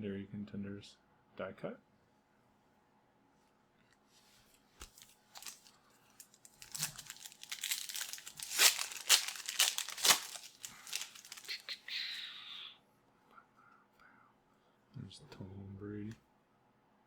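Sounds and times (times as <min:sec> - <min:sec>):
card pack wrapper crinkling: 0:04.8 - 0:12.3.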